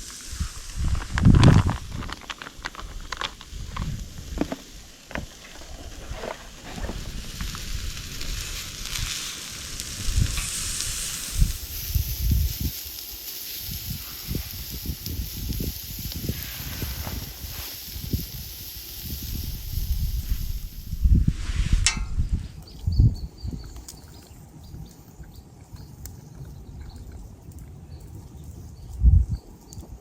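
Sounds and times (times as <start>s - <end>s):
sharp crackles: 0.0s - 22.7s
meat sizzling over campfire: 0.0s - 30.0s.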